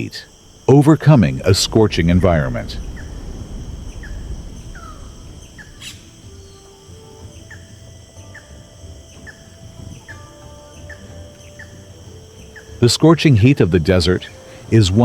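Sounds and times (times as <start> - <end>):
high insect drone: 0.0 - 15.0
short falling bird chirps: 1.3 - 7.7.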